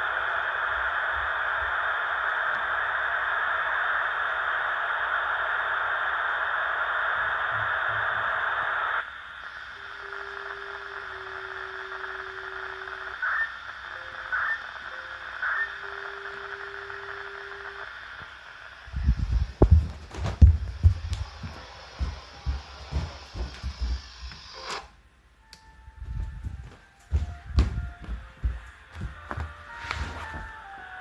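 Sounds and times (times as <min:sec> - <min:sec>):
faint steady tones: 0:00.0 - 0:31.0
radio static hiss: 0:00.0 - 0:31.0.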